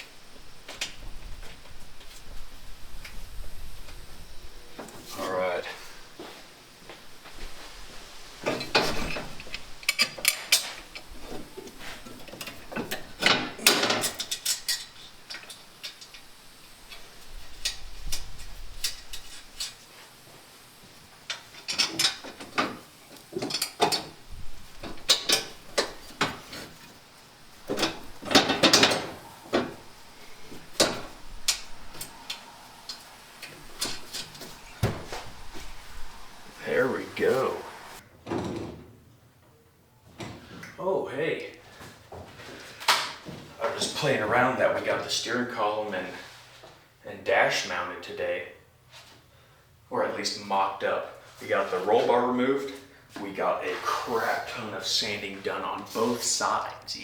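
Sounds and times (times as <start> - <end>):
metal tools clinking and knocking: 8.4 - 11.3, 12.1 - 16.3, 21.3 - 24.2, 24.8 - 26.8, 27.6 - 29.8.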